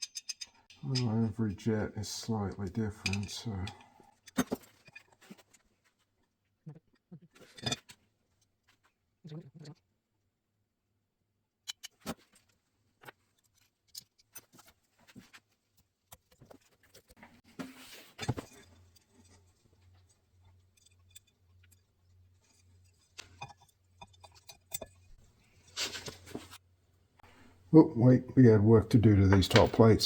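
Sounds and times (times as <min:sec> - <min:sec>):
small metal parts clicking: 0:00.0 - 0:01.0
metal parts clattering: 0:00.0 - 0:01.1.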